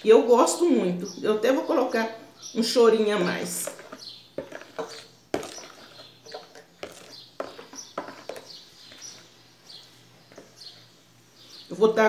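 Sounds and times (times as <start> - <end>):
bird chirping: 0.9 - 11.9
utensils clinking against a bowl: 3.5 - 9.2.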